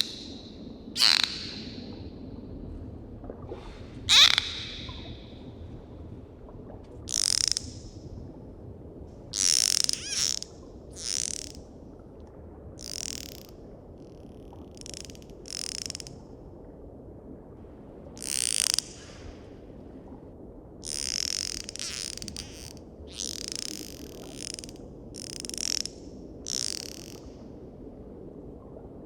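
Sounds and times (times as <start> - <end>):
dolphins calling: 0.0 - 0.4, 1.0 - 1.9, 4.1 - 5.3, 9.4 - 11.6.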